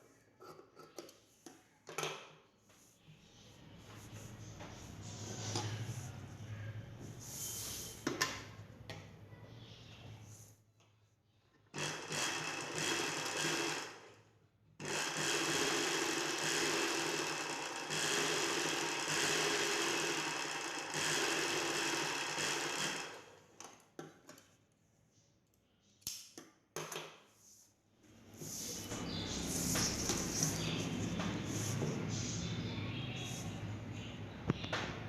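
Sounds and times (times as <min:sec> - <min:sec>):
sewing machine stitching: 0:11.7 - 0:14.2, 0:14.8 - 0:23.3.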